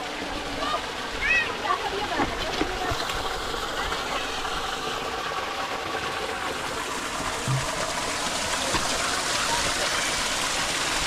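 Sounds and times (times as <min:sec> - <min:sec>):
rushing water: 0:00.0 - 0:11.0
low bump: 0:07.4 - 0:08.1.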